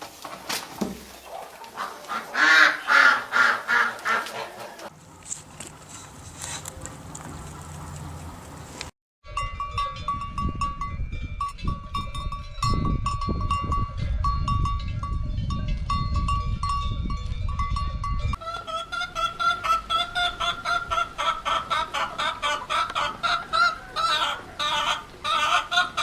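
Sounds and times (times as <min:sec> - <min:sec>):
low steady hum: 0:04.8 - 0:08.9
livestock bells clanking: 0:09.3 - 0:18.4.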